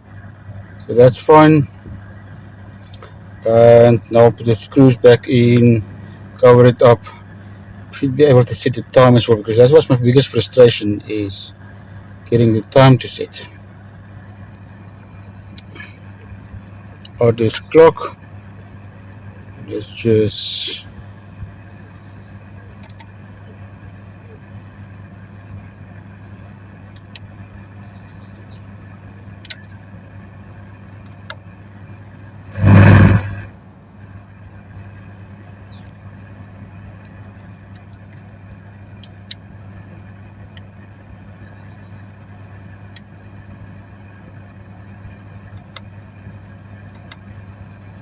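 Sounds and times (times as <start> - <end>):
low hum: 32.4 - 33.6
loud rush of noise: 32.6 - 33.5.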